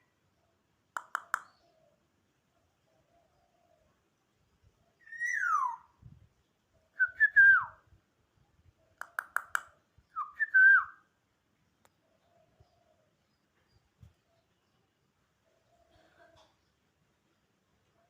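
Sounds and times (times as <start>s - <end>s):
quick sharp clicks: 1.0s - 1.5s, 9.0s - 9.8s
bird whistling fluty calls: 5.0s - 6.0s.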